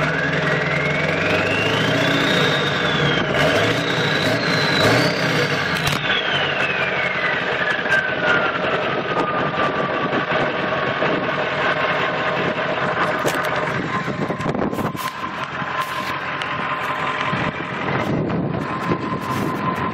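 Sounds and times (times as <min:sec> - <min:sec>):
diesel engine idling: 0:00.0 - 0:19.9
turbocharger whistle: 0:00.0 - 0:19.9.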